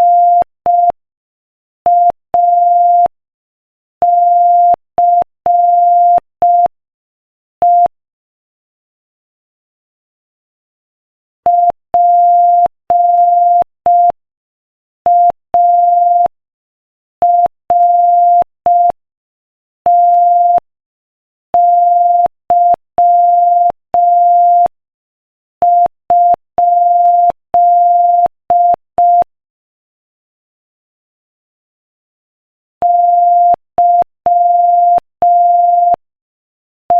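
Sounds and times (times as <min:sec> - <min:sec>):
morse code beeps: 0:00.0 - 0:01.0, 0:01.9 - 0:03.1, 0:04.0 - 0:06.7, 0:19.9 - 0:20.6, 0:21.6 - 0:24.7, 0:25.6 - 0:29.3, 0:32.8 - 0:36.0.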